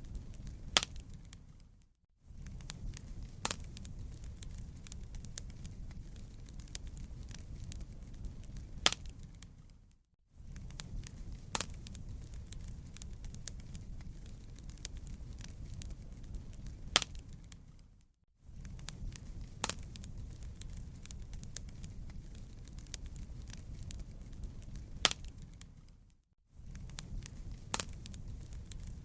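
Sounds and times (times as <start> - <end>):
wood fire crackling: 0.0 - 29.0.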